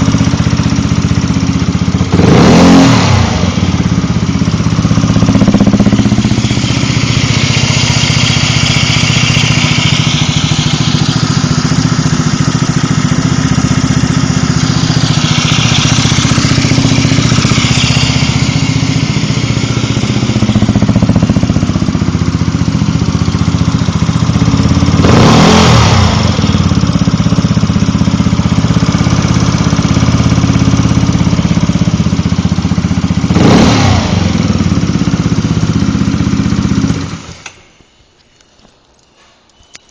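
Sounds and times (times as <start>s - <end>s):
engine ticking: 0.0s - 37.6s
scooter engine idling: 0.0s - 37.6s
engine bursts: 1.9s - 31.9s.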